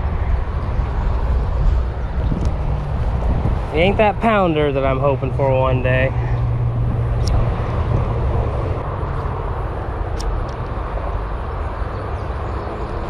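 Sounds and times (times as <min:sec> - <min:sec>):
highway traffic noise: 0:00.0 - 0:13.0
wind rumble on microphone: 0:00.0 - 0:13.0.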